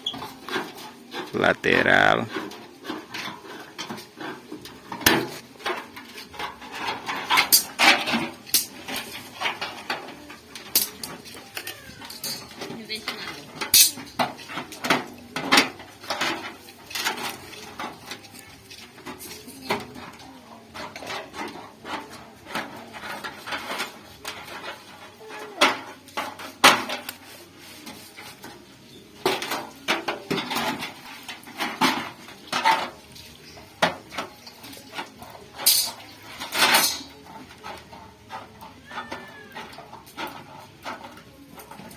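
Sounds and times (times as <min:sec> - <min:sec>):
metallic knocks and clanks: 0:00.0 - 0:27.2.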